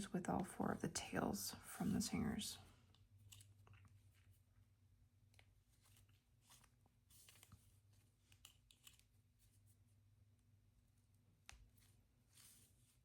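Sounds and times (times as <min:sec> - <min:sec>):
yarn rustling and clicking: 0:02.9 - 0:04.4, 0:05.2 - 0:09.5.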